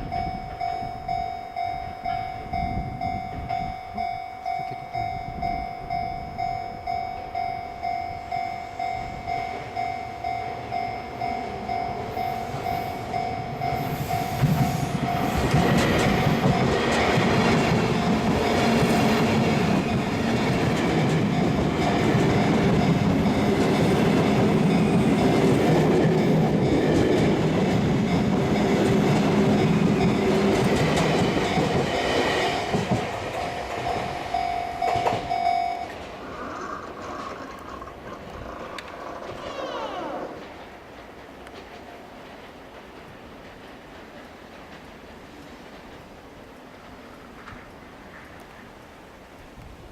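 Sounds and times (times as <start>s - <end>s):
level crossing warning bell: 0.0s - 36.2s
train wheels clattering on rails: 0.0s - 49.9s.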